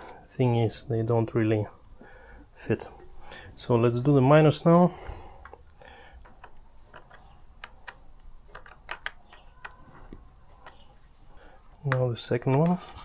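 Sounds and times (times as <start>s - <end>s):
metallic clicks of hand tools: 5.4s - 9.8s.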